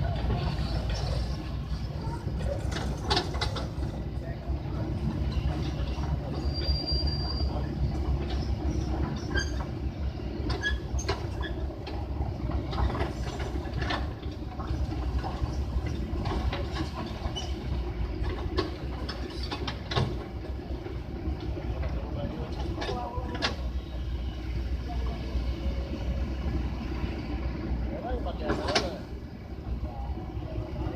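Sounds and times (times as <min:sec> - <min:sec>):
heavy diesel machinery rumbling: 0:00.0 - 0:30.9
short high squeaks: 0:05.7 - 0:07.7.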